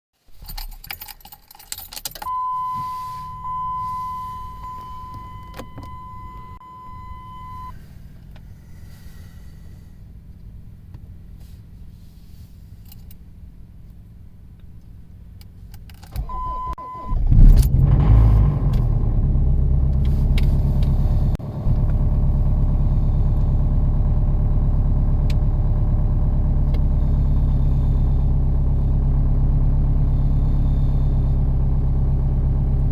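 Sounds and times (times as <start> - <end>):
keys jangling: 0.3 - 2.3
diesel engine cranking and starting: 0.4 - 32.9
low hum: 0.4 - 32.9
electronic warning tone: 2.3 - 7.8.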